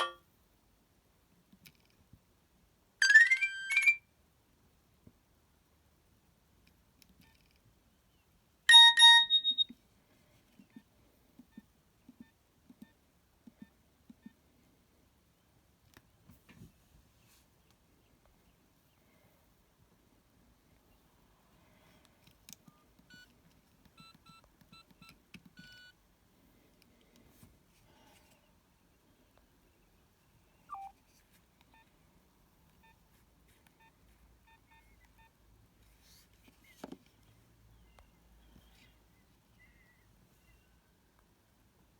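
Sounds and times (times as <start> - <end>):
mobile phone keypad beeps: 3.0 - 4.0, 8.7 - 9.7, 22.7 - 23.3, 24.0 - 26.0, 30.7 - 31.0
buzzy electronic ringtone beeps: 8.7 - 9.7.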